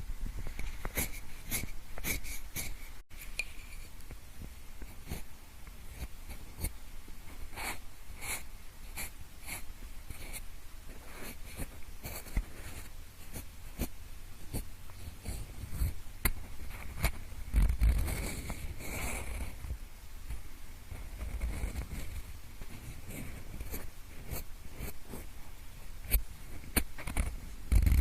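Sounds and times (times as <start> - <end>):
pencil scratching and tapping: 0.4 - 19.6, 20.3 - 25.3, 26.1 - 28.0.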